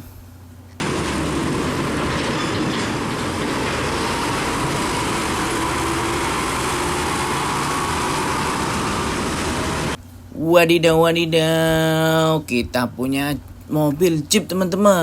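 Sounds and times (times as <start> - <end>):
vehicle rumbling and rattling: 0.8 - 10.0.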